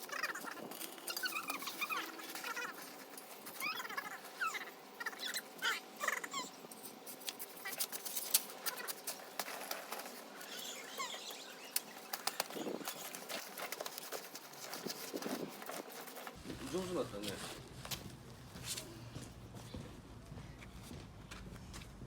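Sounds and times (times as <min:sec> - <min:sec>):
birds chirping: 0:00.0 - 0:07.0, 0:10.0 - 0:14.5.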